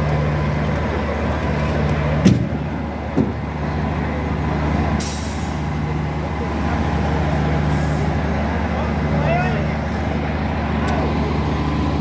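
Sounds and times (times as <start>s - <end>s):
large vehicle engine idling: 0.0s - 12.0s
short knocks: 2.2s - 3.5s.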